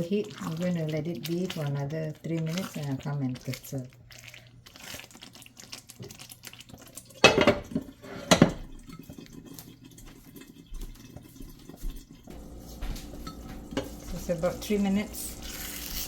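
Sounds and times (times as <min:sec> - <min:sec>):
kitchen handling noise: 0:07.2 - 0:08.7, 0:12.4 - 0:16.0.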